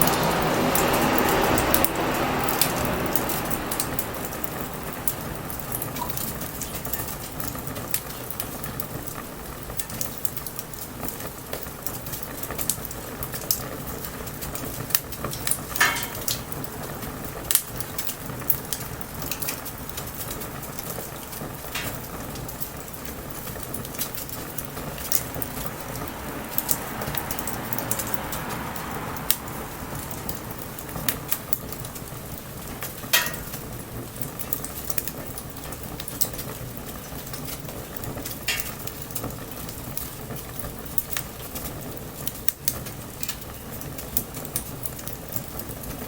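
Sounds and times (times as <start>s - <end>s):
bonfire crackling and popping: 0.0s - 46.0s
light rain hissing: 0.0s - 46.0s
low rumble: 23.6s - 32.3s.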